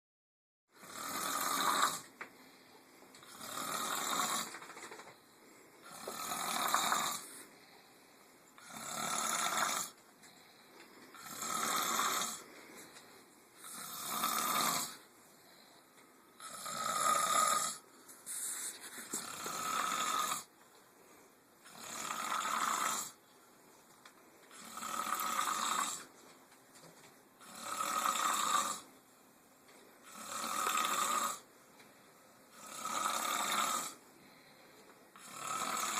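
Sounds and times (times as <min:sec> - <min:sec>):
person snoring: 0:00.8 - 0:02.6, 0:03.2 - 0:05.1, 0:05.8 - 0:07.9, 0:08.6 - 0:13.0, 0:13.6 - 0:15.7, 0:16.3 - 0:20.5, 0:21.6 - 0:23.2, 0:24.5 - 0:26.1, 0:27.4 - 0:28.9, 0:30.0 - 0:31.5, 0:32.5 - 0:35.9.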